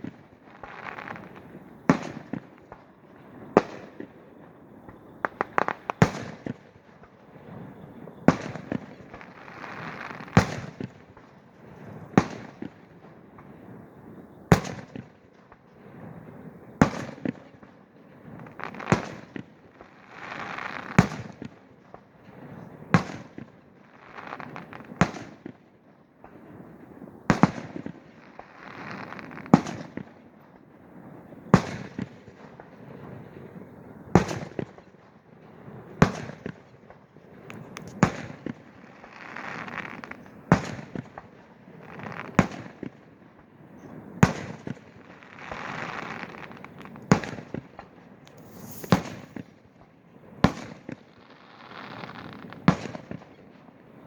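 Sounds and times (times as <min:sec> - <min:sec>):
firework booms echoing: 0:48.5 - 0:49.6.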